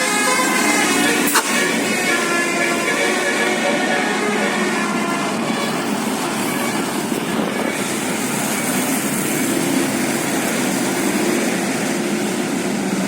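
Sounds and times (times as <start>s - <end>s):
bus engine drone: 0.0s - 13.0s
road noise: 0.0s - 13.0s.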